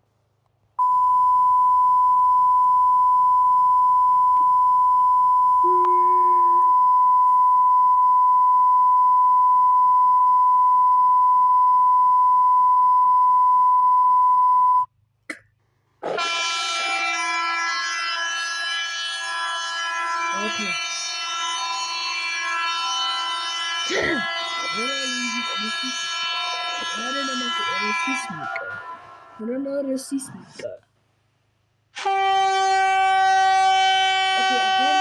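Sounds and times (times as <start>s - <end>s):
multi-tone horn alarm: 0.8s - 14.8s, 16.0s - 29.4s, 32.0s - 35.0s
steady high alert beep: 0.8s - 14.9s.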